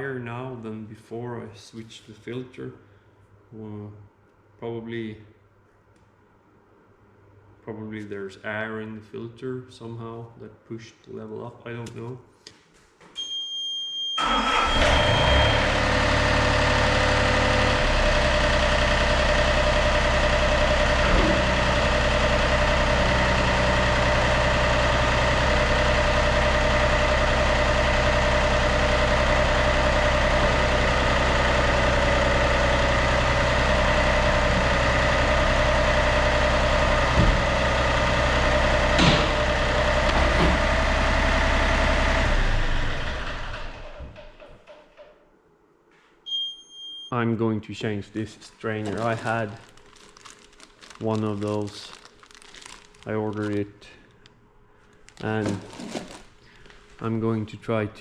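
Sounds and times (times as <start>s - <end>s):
diesel engine idling: 14.2s - 43.9s
high beep: 46.3s - 47.2s.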